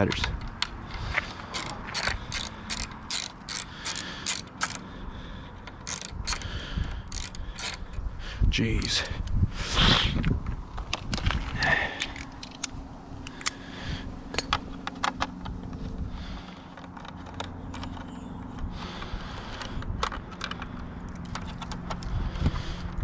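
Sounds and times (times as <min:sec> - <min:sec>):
small metal tools clinking: 0:00.9 - 0:04.8, 0:05.8 - 0:08.0, 0:08.6 - 0:09.2, 0:14.3 - 0:14.6.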